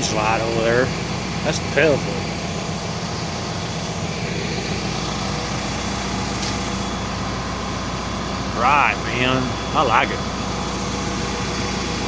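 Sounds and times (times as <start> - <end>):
diesel engine idling: 0.0 - 12.0.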